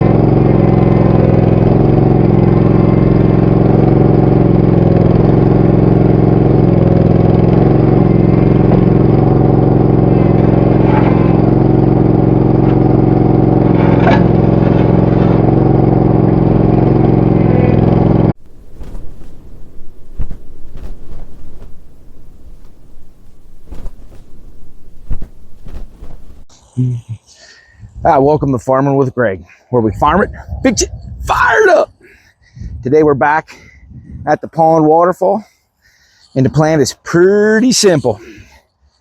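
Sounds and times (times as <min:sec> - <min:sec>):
small engine running steadily: 0:00.0 - 0:26.8, 0:35.4 - 0:39.0
metal clanks: 0:12.6 - 0:15.8.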